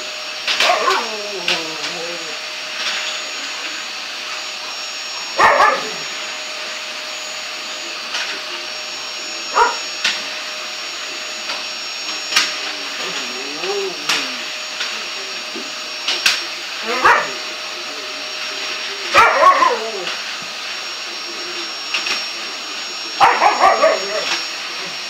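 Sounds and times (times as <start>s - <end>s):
vacuum cleaner running: 0.0s - 25.0s
dog barking: 0.6s - 1.2s, 5.4s - 6.0s, 9.5s - 9.9s, 16.9s - 17.4s, 19.1s - 19.8s, 23.2s - 24.4s
dog whining: 0.6s - 2.5s, 5.4s - 6.1s, 9.5s - 9.8s, 12.9s - 14.6s, 16.8s - 17.4s, 19.1s - 20.2s, 23.2s - 24.4s.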